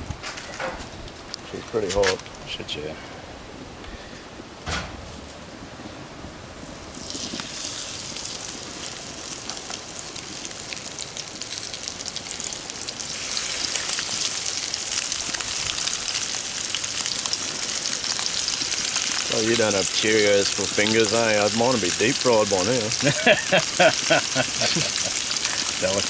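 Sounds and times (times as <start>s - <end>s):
fish sizzling in hot oil: 6.6s - 26.0s.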